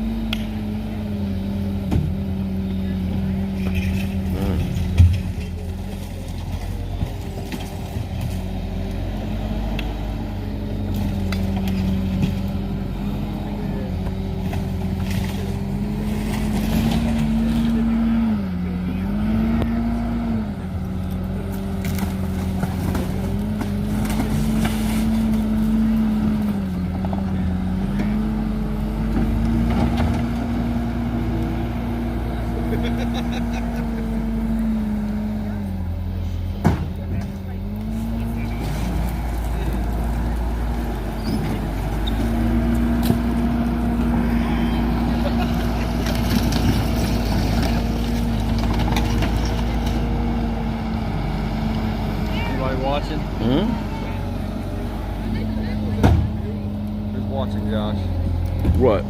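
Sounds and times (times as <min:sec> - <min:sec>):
bulldozer diesel engine running: 0:00.0 - 0:59.0.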